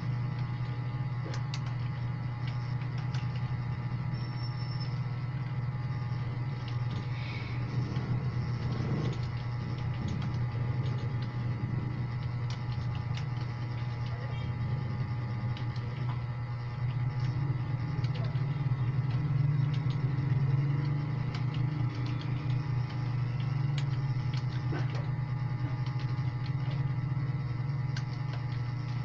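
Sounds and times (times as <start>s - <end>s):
low hum: 0.0s - 29.0s.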